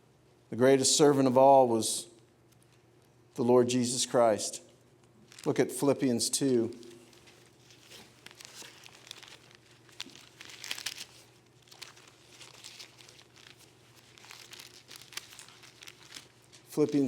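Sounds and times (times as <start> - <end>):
pages rustling: 6.4 - 17.0.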